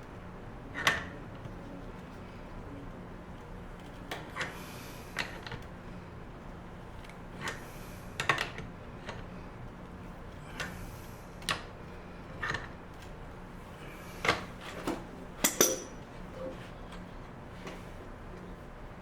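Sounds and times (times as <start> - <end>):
metallic clinks of tools: 15.4 - 16.0.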